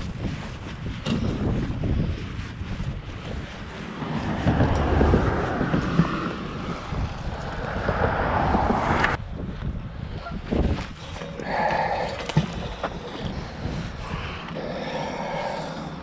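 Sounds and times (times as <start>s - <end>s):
wind rumbling on microphone: 0.0s - 16.0s
highway traffic: 2.4s - 16.0s
vehicle passing: 3.6s - 9.2s.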